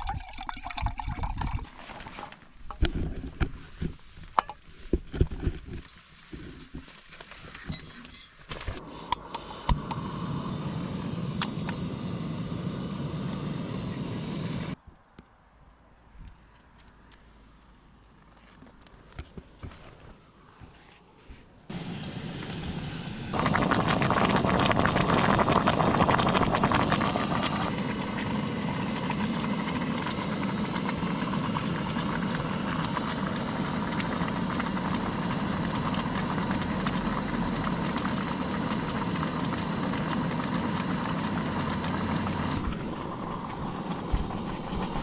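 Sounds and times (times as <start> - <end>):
fire crackling: 8.5 - 14.8, 21.7 - 45.0
wood fire rushing: 21.7 - 45.0.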